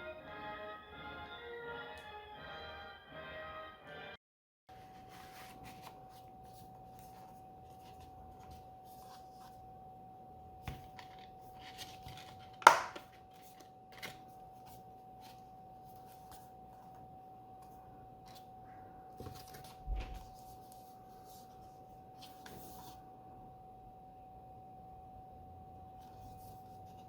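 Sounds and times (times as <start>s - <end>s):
faint high hum: 4.7s - 27.0s
plastic disc cases clicking: 11.8s - 14.2s
plastic case snap: 12.6s - 13.1s.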